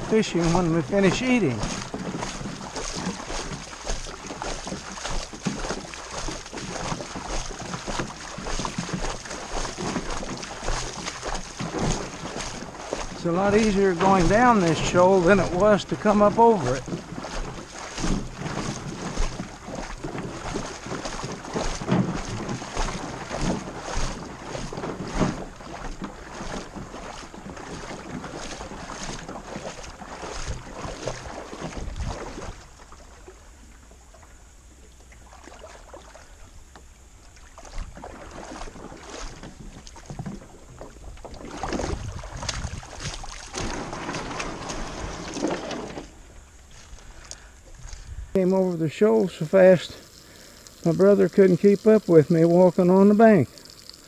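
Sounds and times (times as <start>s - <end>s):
boat knocking and scraping on gravel: 0.0s - 32.8s, 37.8s - 50.0s, 50.8s - 53.5s
rushing riffle water: 0.0s - 54.0s.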